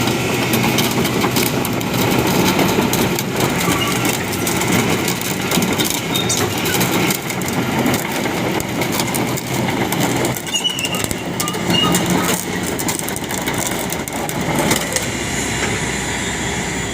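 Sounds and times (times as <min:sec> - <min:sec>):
excavator diesel engine running: 0:00.0 - 0:16.9
brief squeaks: 0:10.4 - 0:12.4.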